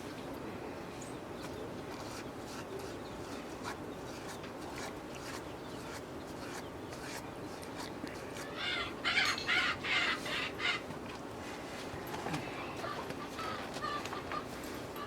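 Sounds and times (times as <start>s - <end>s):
faint steady background noise: 0.0s - 15.0s
bird harsh calls: 8.2s - 10.9s, 12.6s - 15.0s.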